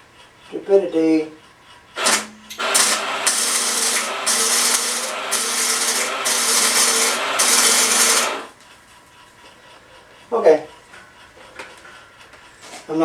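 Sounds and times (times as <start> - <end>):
welding arc crackling: 2.0 - 8.5.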